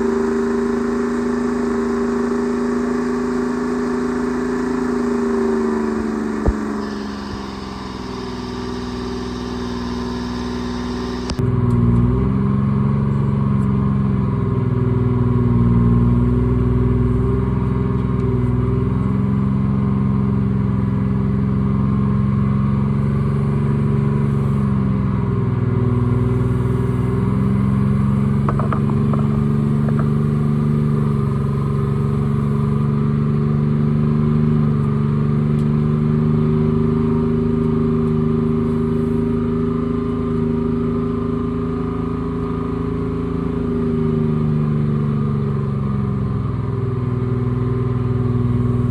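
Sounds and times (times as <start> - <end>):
diesel engine running: 0.0 - 48.9
light knocks: 28.4 - 30.6.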